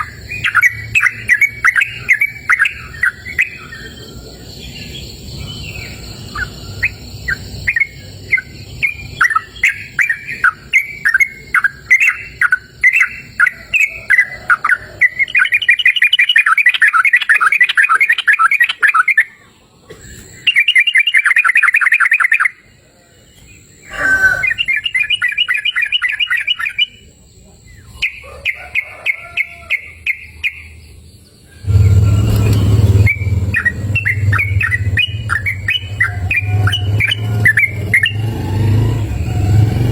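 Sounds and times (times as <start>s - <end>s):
bird singing chattering trills: 0.0s - 39.9s
rushing noise: 31.6s - 39.9s.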